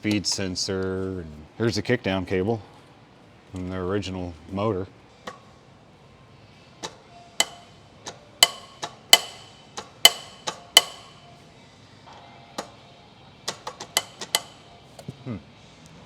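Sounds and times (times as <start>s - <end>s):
hand tools tapping metal: 0.0s - 1.0s, 5.2s - 5.6s, 6.8s - 11.4s, 12.1s - 12.8s, 13.4s - 15.1s.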